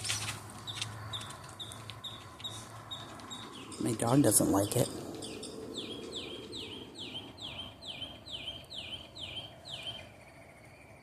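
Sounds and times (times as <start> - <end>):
bird singing high sliding notes: 2.5 - 11.0.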